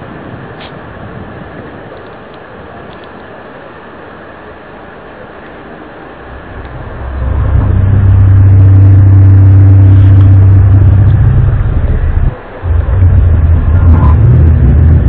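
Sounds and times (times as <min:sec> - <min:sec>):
faint steady hiss: 0:00.0 - 0:15.0
low trumpet-like drone: 0:06.2 - 0:15.0.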